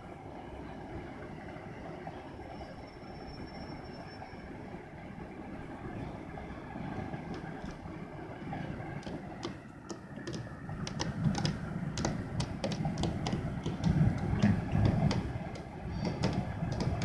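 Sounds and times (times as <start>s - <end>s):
raindrops ticking on hard surface: 9.0s - 17.0s.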